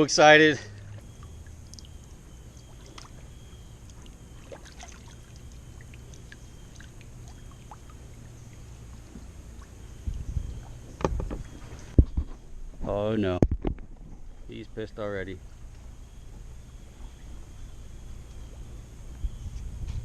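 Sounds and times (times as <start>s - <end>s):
steady low rumble: 0.0s - 20.0s
water drips: 0.6s - 12.0s
light knocks against hull: 10.1s - 12.3s.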